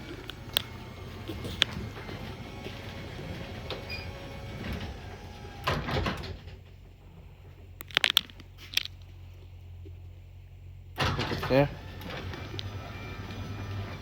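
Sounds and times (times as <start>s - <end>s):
garage door opener running: 0.0s - 6.8s, 11.0s - 14.0s
garage door clatter: 0.0s - 7.5s, 11.0s - 14.0s.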